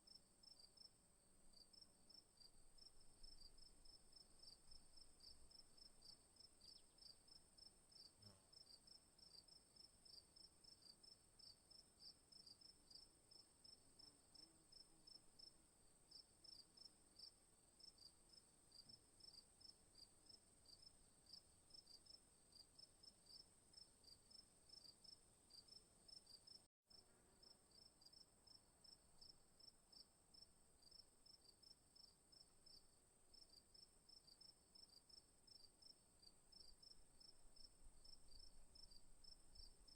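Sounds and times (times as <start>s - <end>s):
crickets chirping: 27.4s - 39.9s.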